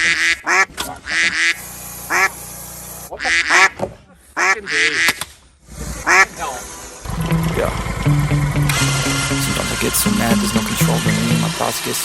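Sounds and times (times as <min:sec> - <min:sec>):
duck quacking: 0:00.0 - 0:02.3, 0:03.1 - 0:03.8, 0:04.4 - 0:05.2, 0:06.0 - 0:06.4.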